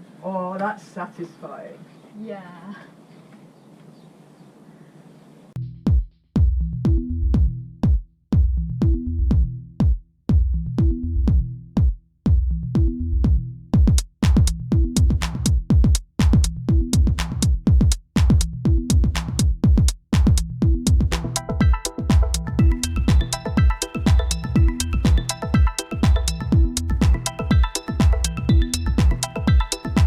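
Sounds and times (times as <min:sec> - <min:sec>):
electronic dance music: 0:21.1 - 0:30.0.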